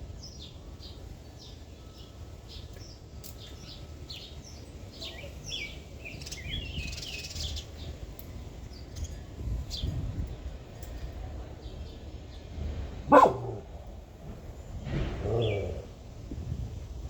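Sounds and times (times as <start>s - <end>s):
small birds chirping: 0.0s - 13.8s, 14.5s - 16.1s
steady low rumble: 8.6s - 17.0s.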